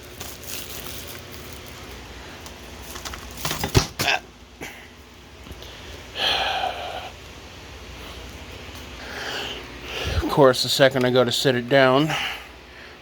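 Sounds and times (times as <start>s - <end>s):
plastic case and shrink wrap crinkling: 0.0s - 4.0s.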